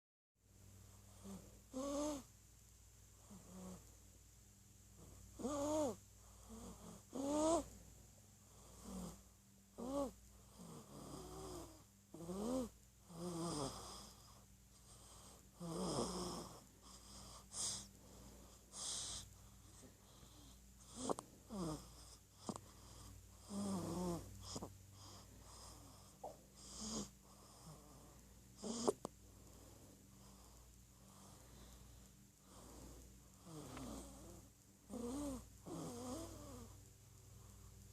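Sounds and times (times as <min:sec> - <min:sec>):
baby snoring with squeaky whistle: 0:01.2 - 0:02.3, 0:05.4 - 0:07.7, 0:09.8 - 0:14.2, 0:15.6 - 0:17.8, 0:28.6 - 0:29.0.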